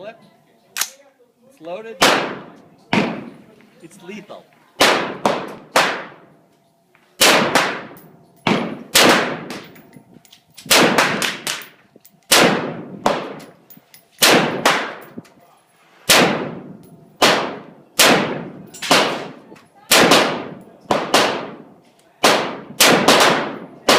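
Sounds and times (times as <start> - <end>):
rifle shots echoing: 2.0 - 3.4, 4.8 - 6.3, 7.2 - 9.8, 10.7 - 13.6, 14.2 - 15.2, 16.1 - 23.9.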